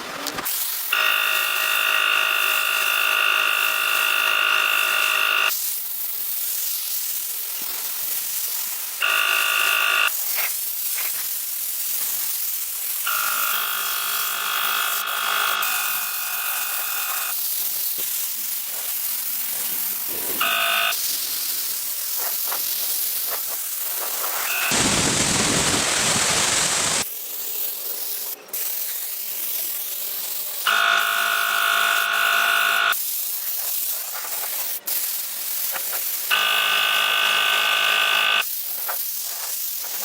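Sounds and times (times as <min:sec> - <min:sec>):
electric motor whine: 0:01.0 - 0:05.5, 0:09.0 - 0:10.1, 0:13.1 - 0:17.3, 0:19.7 - 0:21.0, 0:24.4 - 0:25.0, 0:30.7 - 0:32.9, 0:36.4 - 0:38.4
spray gun hissing: 0:02.4 - 0:36.4, 0:37.9 - 0:40.0.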